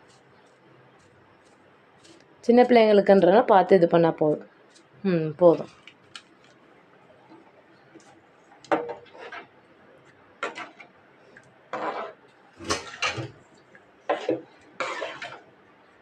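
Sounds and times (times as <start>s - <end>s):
spoon scraping cooking pan: 8.0s - 9.6s, 10.4s - 10.9s, 11.7s - 13.4s, 14.1s - 15.5s.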